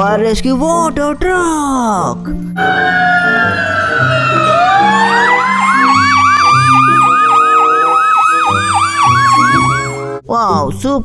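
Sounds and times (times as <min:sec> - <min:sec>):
fire truck siren: 0:02.5 - 0:10.2.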